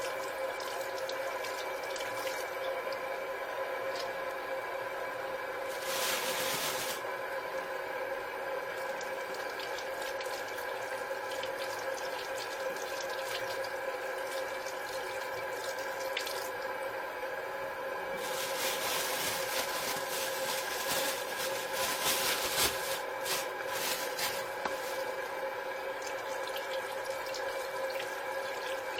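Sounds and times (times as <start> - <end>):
tap water running into sink: 8.7 - 16.7, 24.5 - 28.9.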